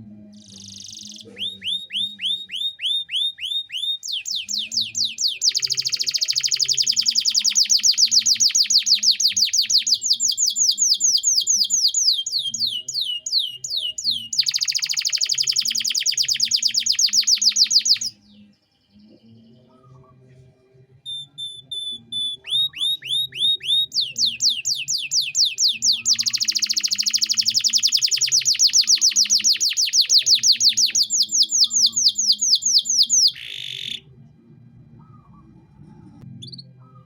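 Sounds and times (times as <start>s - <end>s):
canary singing trills: 0.4s - 20.1s, 21.1s - 34.1s.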